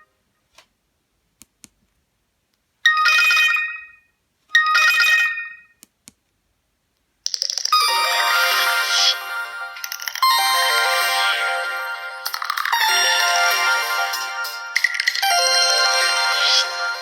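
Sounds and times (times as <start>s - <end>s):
phone ringtone: 2.9s - 5.8s, 7.3s - 17.0s
phone ringtone melody: 7.4s - 17.0s.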